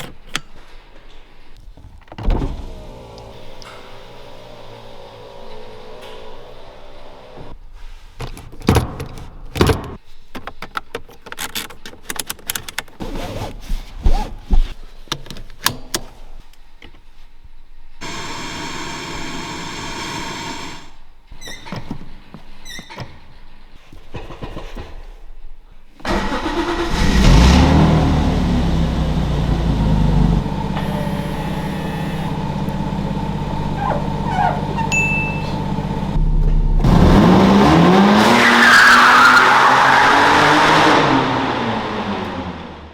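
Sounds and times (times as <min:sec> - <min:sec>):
car engine starting and idling: 0:02.1 - 0:07.6, 0:18.0 - 0:21.0, 0:26.1 - 0:42.9
clicks and knocks: 0:08.2 - 0:13.0.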